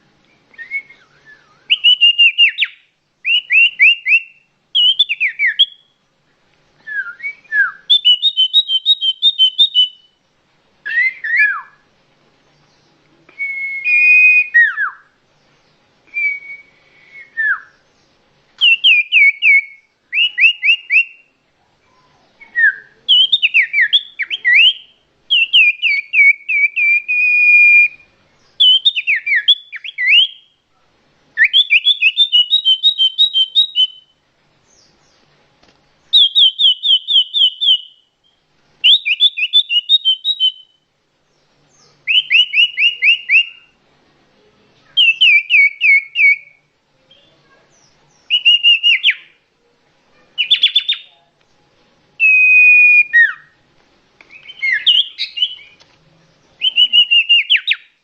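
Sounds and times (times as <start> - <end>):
bird singing rapid clear notes: 1.4 - 6.0, 7.1 - 10.2, 17.4 - 21.3, 21.9 - 30.6, 31.4 - 35.3, 36.0 - 43.8, 44.8 - 49.4, 50.3 - 51.2, 54.3 - 58.0.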